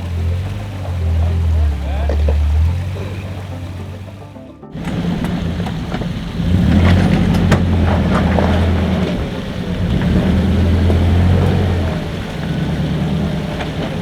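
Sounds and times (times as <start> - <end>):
off-road vehicle engine pulling: 0.0 - 14.0
tyres knocking over rock: 4.8 - 14.0.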